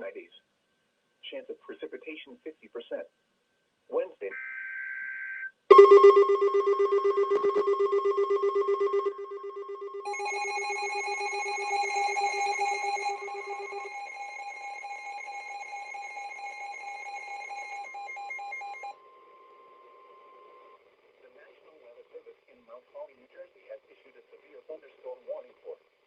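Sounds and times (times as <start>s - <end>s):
chord of electronic tones: 4.3s - 20.7s
pulsing ringing alert tone: 5.7s - 19.0s
steady high tone: 5.7s - 20.7s.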